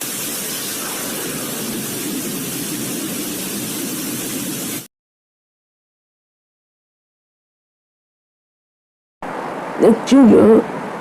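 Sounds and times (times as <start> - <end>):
static-like white noise hiss: 0.0 - 4.9.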